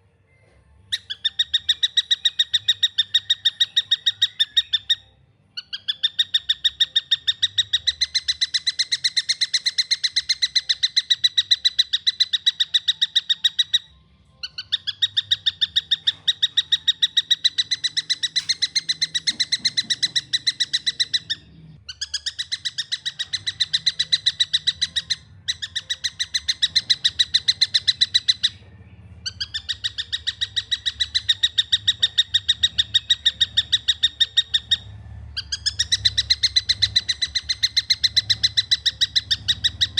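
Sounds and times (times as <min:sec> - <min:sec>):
kingfisher fast chirping calls: 0:14.6 - 0:28.6, 0:29.3 - 0:39.9.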